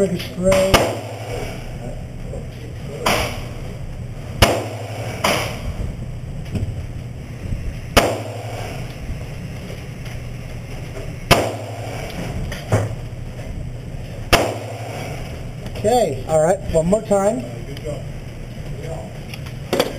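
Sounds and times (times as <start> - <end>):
pistol shots: 0.5 - 1.5, 4.4 - 5.6, 8.0 - 8.8, 11.3 - 12.1, 14.3 - 15.2.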